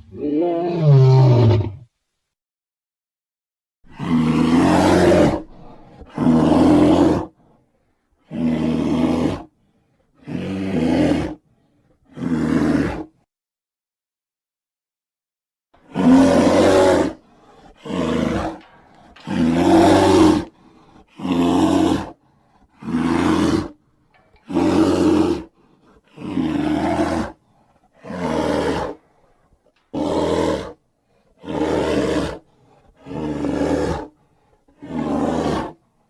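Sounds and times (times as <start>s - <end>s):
monster roars: 4.0s - 7.3s, 15.9s - 20.5s, 21.2s - 22.2s.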